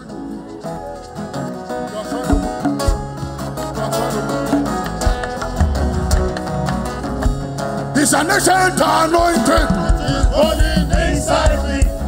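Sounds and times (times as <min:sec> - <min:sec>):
guitar: 0:00.0 - 0:12.0
live band playing: 0:00.0 - 0:12.0.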